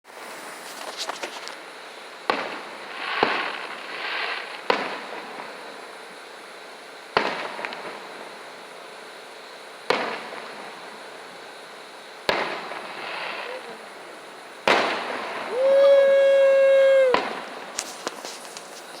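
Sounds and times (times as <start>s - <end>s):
crackling hiss of fireworks: 0.1s - 19.0s
fireworks banging: 0.2s - 6.0s, 7.1s - 8.2s, 9.8s - 11.1s, 12.2s - 19.0s.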